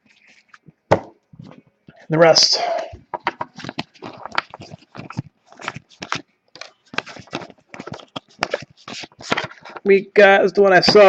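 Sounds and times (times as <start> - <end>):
cards flipped by hand: 3.1 - 9.9.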